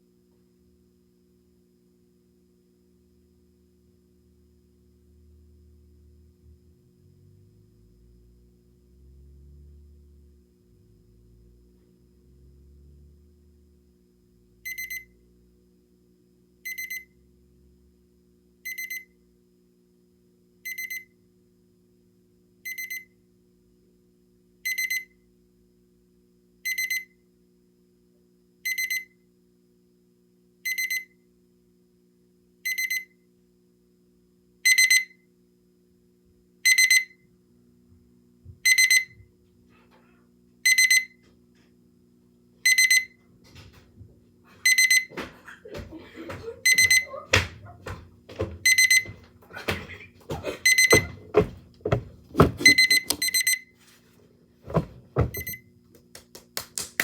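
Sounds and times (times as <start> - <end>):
electronic alarm beeping: 14.6 - 15.2, 16.7 - 17.1, 18.7 - 19.1, 20.7 - 21.1, 22.7 - 23.1, 24.7 - 25.1, 26.7 - 27.1, 28.7 - 29.1, 30.7 - 31.1, 32.7 - 33.1, 34.7 - 35.2, 36.6 - 37.2, 38.6 - 39.3, 40.7 - 41.2, 42.6 - 43.2, 44.6 - 45.1, 46.6 - 47.1, 48.6 - 49.2, 50.6 - 51.2, 51.9 - 53.7, 55.3 - 55.7.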